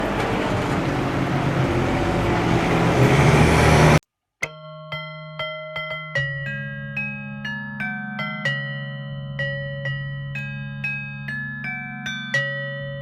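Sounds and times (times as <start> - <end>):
bell-like mallet music: 4.4 - 13.0.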